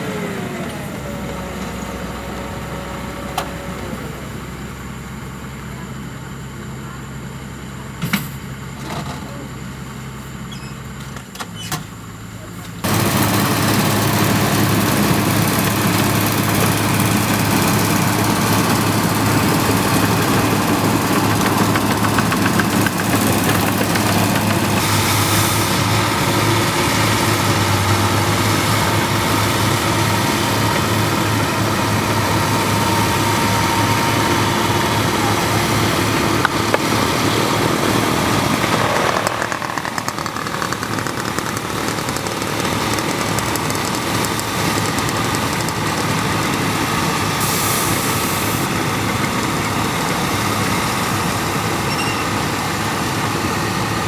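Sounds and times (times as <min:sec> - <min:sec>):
combine harvester engine running: 0:00.0 - 0:54.0.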